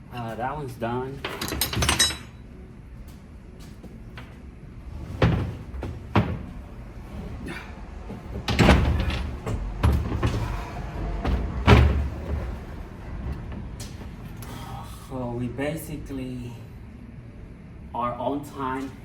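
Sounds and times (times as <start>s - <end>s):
tools and metal parts clunking: 1.1s - 2.4s, 8.1s - 14.4s.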